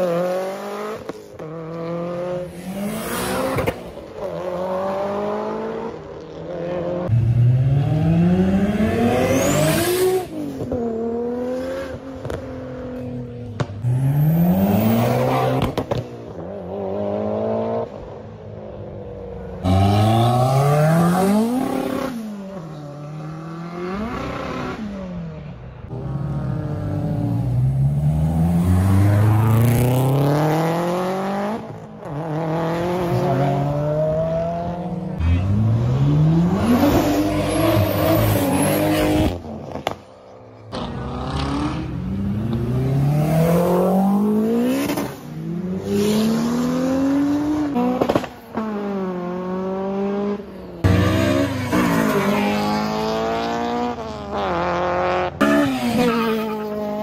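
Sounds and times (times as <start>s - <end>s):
car engines accelerating hard: 0.0s - 18.8s, 19.5s - 57.0s.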